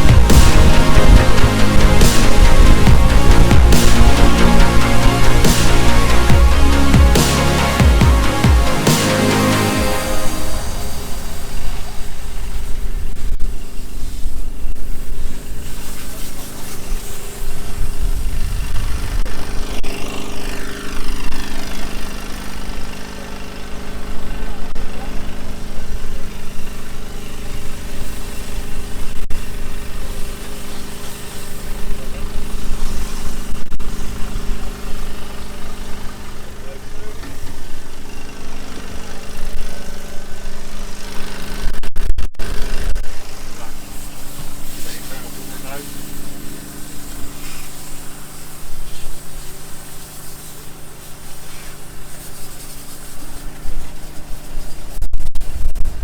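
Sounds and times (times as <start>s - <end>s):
uneven low rumbling: 0.0s - 13.6s
engine running steadily: 0.0s - 13.8s, 15.4s - 41.7s, 42.4s - 54.9s
broad hissing noise: 0.0s - 56.0s.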